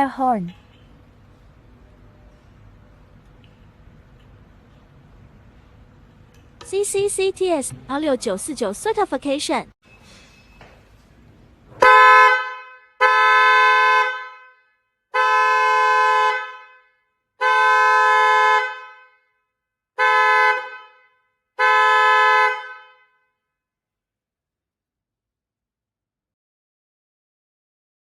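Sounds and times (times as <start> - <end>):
buzzy vehicle horn blasts: 11.8 - 19.4, 20.0 - 23.4.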